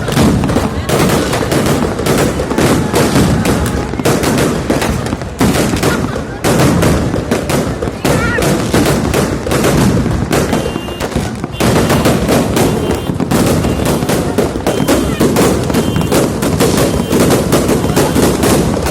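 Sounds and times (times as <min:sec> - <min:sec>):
fireworks bangs and crackles: 0:00.0 - 0:18.9
firework whistles: 0:10.4 - 0:18.6.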